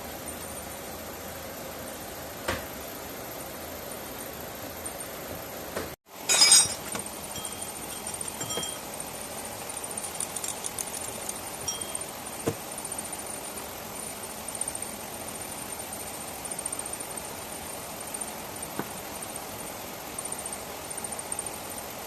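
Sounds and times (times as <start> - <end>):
sharp metallic clink: 6.3 - 8.8, 10.0 - 12.1.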